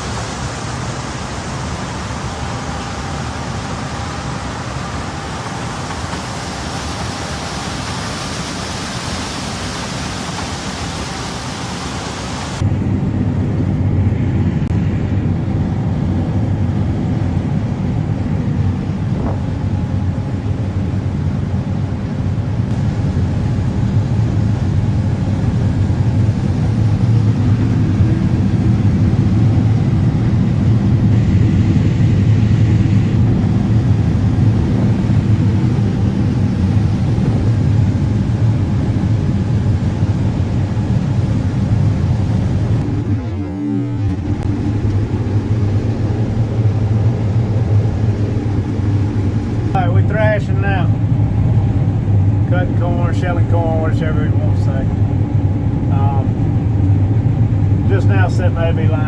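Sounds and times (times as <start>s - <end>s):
vehicle running hiss: 0.0s - 12.6s
deep engine rumble: 0.0s - 59.0s.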